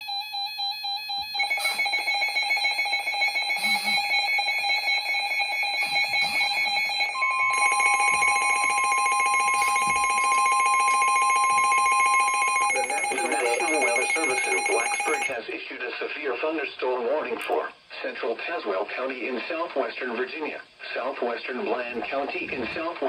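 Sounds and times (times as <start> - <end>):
long steady alarm tone: 0.0 - 15.4
pulsing electronic alarm: 0.0 - 15.4.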